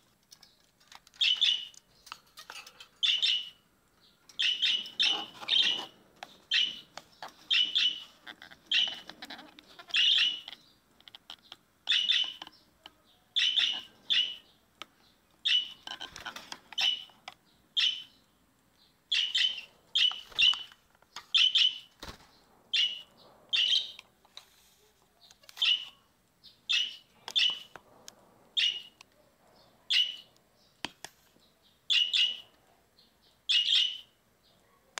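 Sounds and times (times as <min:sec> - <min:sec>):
budgerigars chirping: 0:01.2 - 0:01.8, 0:03.0 - 0:03.6, 0:04.4 - 0:12.6, 0:13.4 - 0:14.6, 0:15.4 - 0:18.2, 0:19.1 - 0:21.9, 0:22.7 - 0:24.0, 0:25.6 - 0:27.7, 0:28.6 - 0:29.0, 0:29.9 - 0:30.3, 0:31.9 - 0:32.5, 0:33.5 - 0:34.1.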